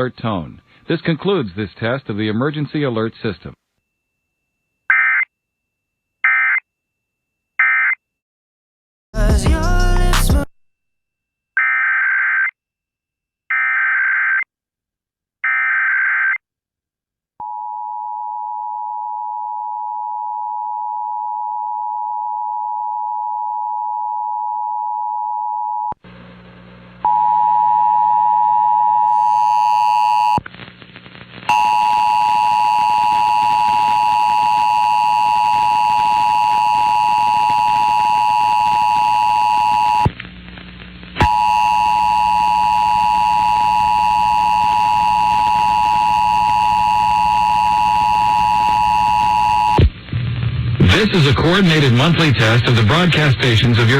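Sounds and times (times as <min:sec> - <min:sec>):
hum: 0:26.0 - 0:53.9.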